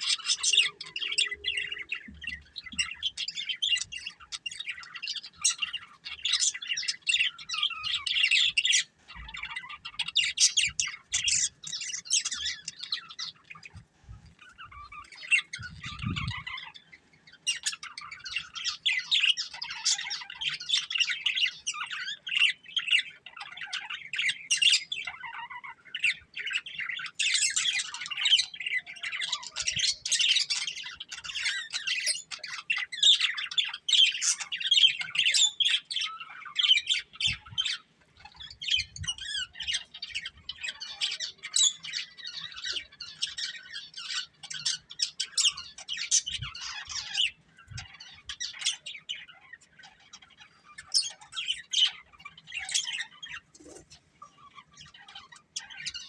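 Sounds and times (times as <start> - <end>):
budgerigars chirping: 0.0 - 56.0.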